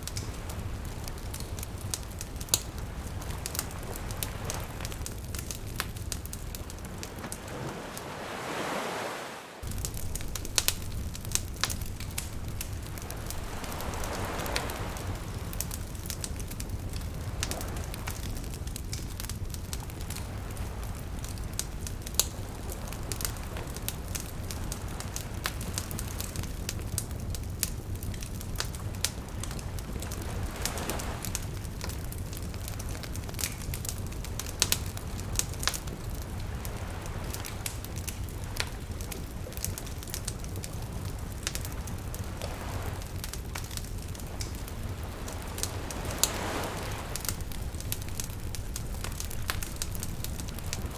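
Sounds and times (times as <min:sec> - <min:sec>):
wood fire crackling: 0:00.0 - 0:09.0, 0:09.6 - 0:50.9
small waves washing in: 0:00.0 - 0:18.7, 0:28.6 - 0:32.8, 0:34.6 - 0:50.9
low steady rumble: 0:09.6 - 0:50.9.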